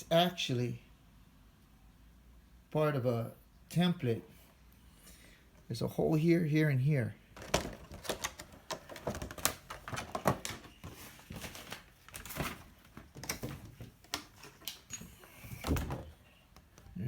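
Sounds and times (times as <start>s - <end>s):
hands handling packaging: 7.4s - 15.0s.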